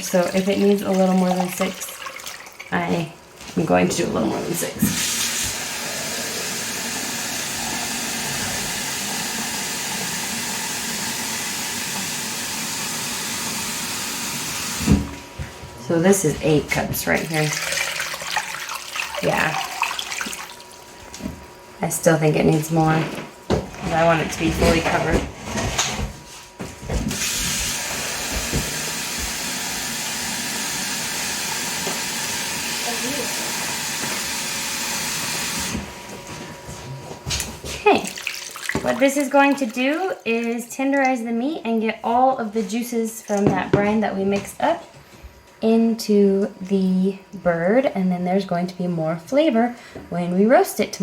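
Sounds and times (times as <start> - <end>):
water running from tap: 0.0 - 15.4, 16.1 - 23.0, 27.1 - 35.8, 37.8 - 41.3.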